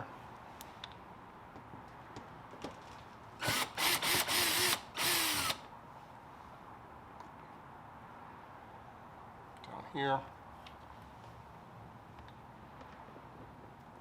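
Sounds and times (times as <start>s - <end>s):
power drill revving: 3.4s - 5.6s.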